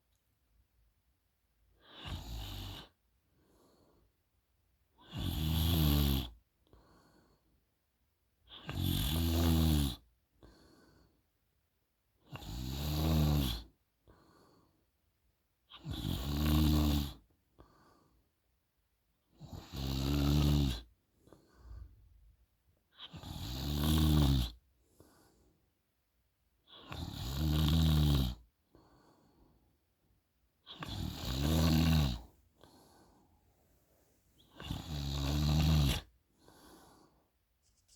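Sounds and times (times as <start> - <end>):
faint breath: 3.4 - 4.2, 10.4 - 11.2, 17.6 - 18.3, 21.2 - 22.1, 24.8 - 25.7, 28.7 - 29.8, 32.2 - 34.7, 36.3 - 37.9
woman snoring: 23.1 - 24.6, 26.8 - 28.4, 30.7 - 32.4, 34.4 - 36.1.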